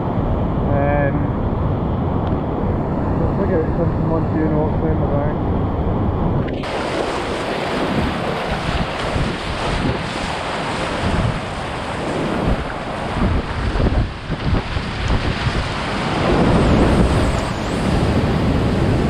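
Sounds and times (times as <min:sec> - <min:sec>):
wind buffeting microphone: 0:00.0 - 0:19.0
river whitewater rushing: 0:06.6 - 0:19.0.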